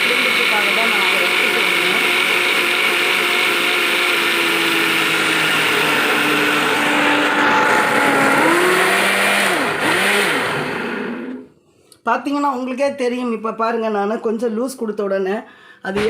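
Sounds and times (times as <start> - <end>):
mixer grinder motor running: 0.0 - 11.5.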